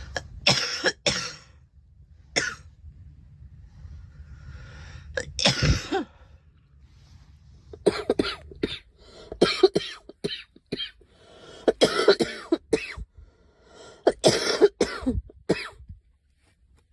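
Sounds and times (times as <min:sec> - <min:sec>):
girl coughing: 0:00.5 - 0:01.5, 0:05.2 - 0:06.2, 0:07.9 - 0:11.0, 0:11.7 - 0:13.0, 0:14.1 - 0:15.8.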